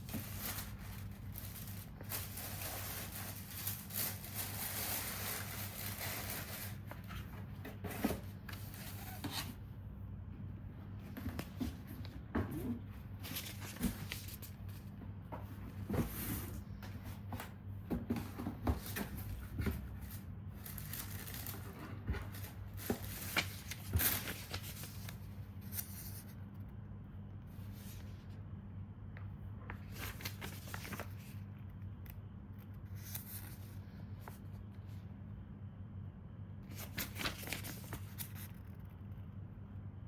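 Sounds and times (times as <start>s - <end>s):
paper pages turning: 0.0s - 7.3s, 13.2s - 14.9s, 19.3s - 26.4s, 29.7s - 34.6s, 36.6s - 38.9s.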